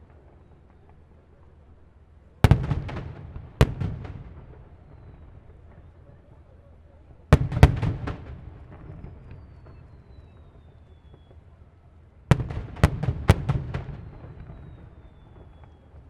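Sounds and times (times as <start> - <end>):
firework bangs with rumbling echo: 2.4 - 5.7, 7.3 - 10.4, 12.3 - 16.0.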